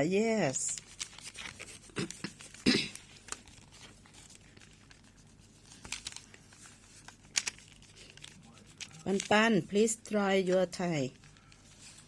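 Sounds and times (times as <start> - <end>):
paper rustling: 0.4 - 12.0.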